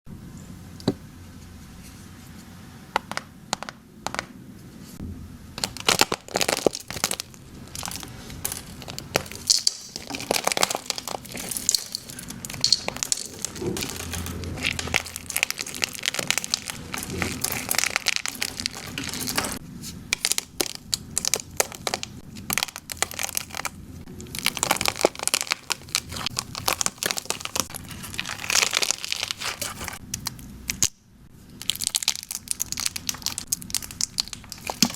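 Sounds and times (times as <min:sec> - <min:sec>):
slime crackling and popping: 0:05.6 - 0:34.9.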